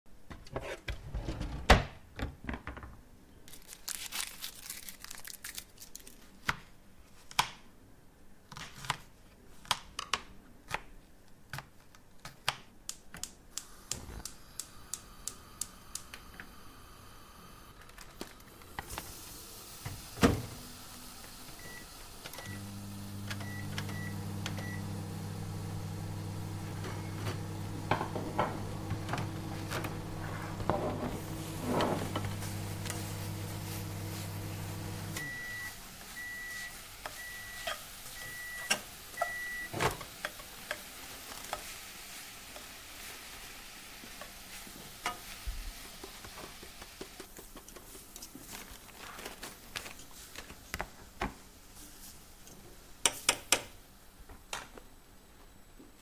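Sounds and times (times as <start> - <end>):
microwave oven humming: 19.4 - 40.2.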